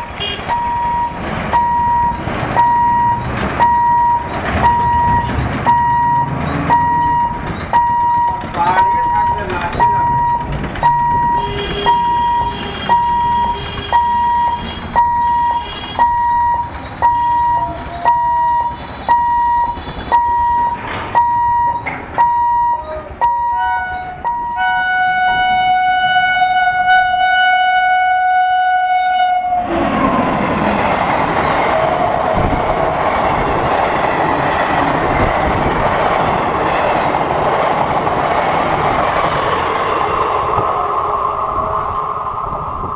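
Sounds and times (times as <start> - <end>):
train passing on track: 0.0 - 42.9
locomotive horn toots: 0.1 - 0.7, 11.1 - 16.3, 22.9 - 29.8.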